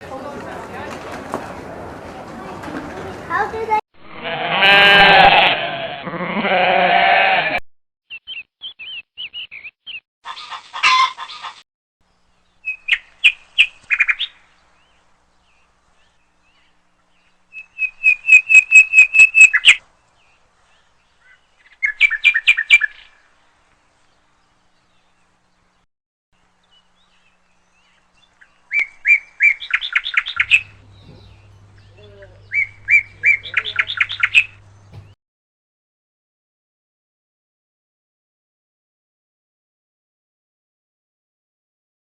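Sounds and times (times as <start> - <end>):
goat bleating: 4.1 - 7.6, 30.4 - 35.2
high bird chirps: 8.1 - 10.0, 28.7 - 35.2.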